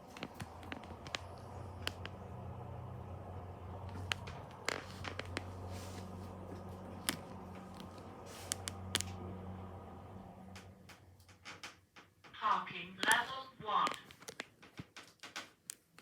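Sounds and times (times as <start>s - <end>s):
lift motor hum: 0.0s - 11.7s.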